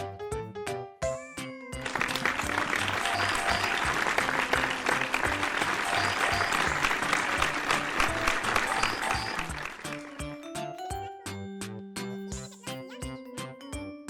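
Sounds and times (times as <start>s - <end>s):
applause: 1.8s - 10.6s.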